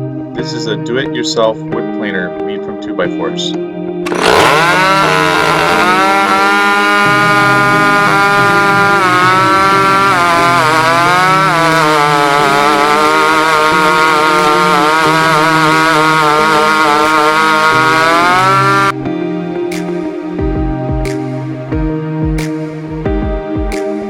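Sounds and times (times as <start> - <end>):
chainsaw cutting log: 4.0 - 18.9.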